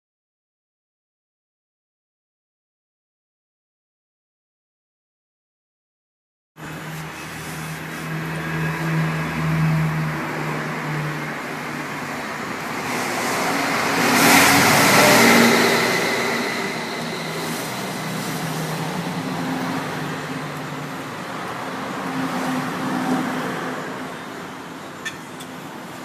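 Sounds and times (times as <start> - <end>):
traffic hum: 6.6 - 26.0
vehicle passing by: 6.6 - 26.0.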